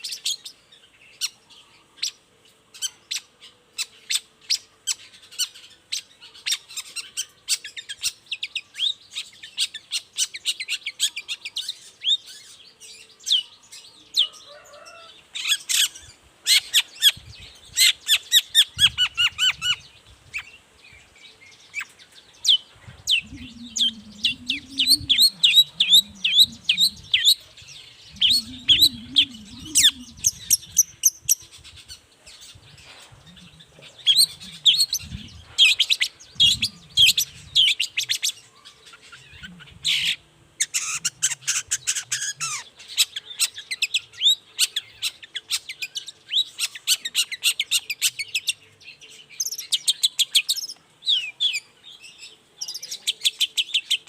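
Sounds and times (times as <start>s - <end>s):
shrike singing: 21.6s - 42.6s.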